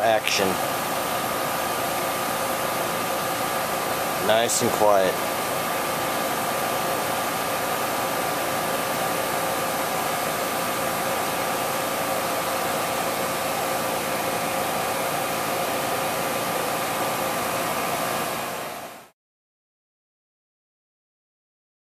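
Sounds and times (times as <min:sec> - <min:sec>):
low compressor hum: 0:00.0 - 0:18.8
fan air rush: 0:00.0 - 0:19.1.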